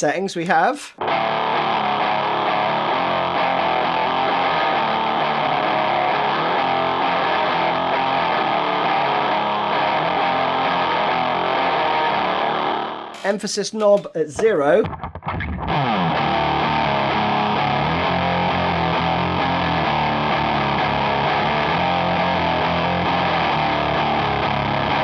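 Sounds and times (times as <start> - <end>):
distorted electric guitar riff: 0.9 - 25.0.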